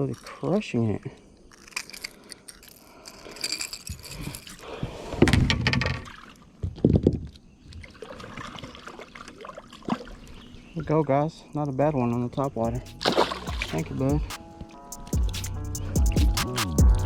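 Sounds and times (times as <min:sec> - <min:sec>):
metal clinking and jingling: 0:01.9 - 0:04.6.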